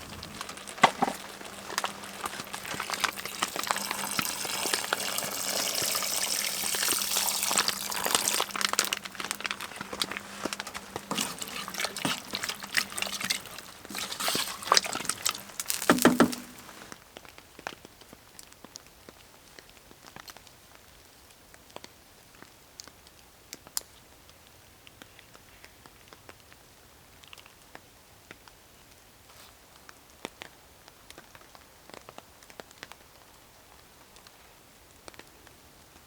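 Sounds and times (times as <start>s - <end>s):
liquid pouring and splashing: 0.0s - 16.9s.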